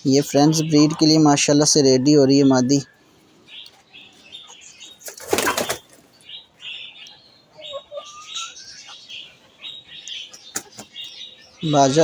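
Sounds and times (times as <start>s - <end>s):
small birds chirping: 0.0s - 12.0s
bird wings flapping: 5.0s - 6.1s.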